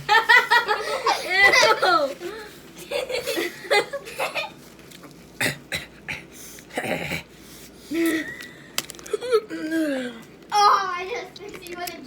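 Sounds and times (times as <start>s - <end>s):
person gagging and coughing: 5.4s - 7.3s.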